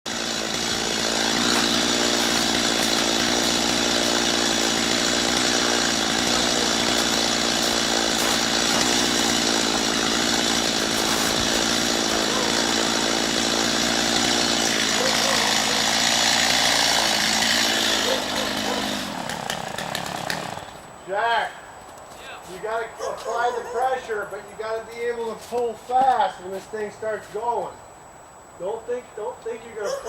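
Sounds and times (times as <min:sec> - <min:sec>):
chainsaw cutting tree trunk: 0:00.1 - 0:20.8.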